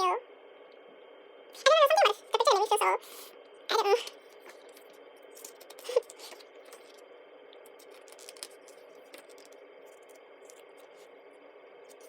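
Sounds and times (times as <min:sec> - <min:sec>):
paper rustling: 0:07.7 - 0:11.1.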